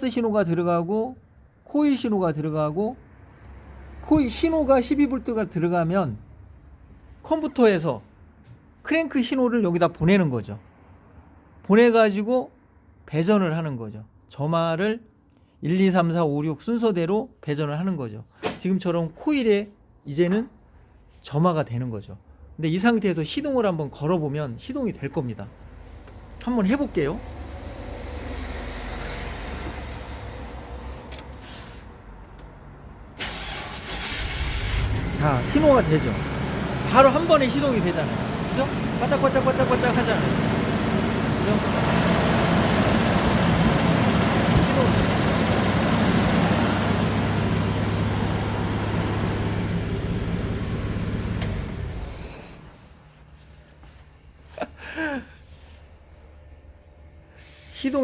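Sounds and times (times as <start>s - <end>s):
light key clinks: 30.5s - 32.9s
car keys jingling: 30.5s - 33.6s, 51.4s - 52.2s
engine running: 33.2s - 52.9s.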